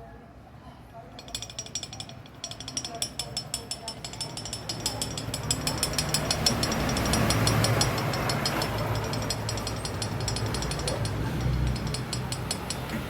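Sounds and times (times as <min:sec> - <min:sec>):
fast metallic ticking: 0:01.2 - 0:13.0
motorcycle engine running: 0:01.2 - 0:13.0.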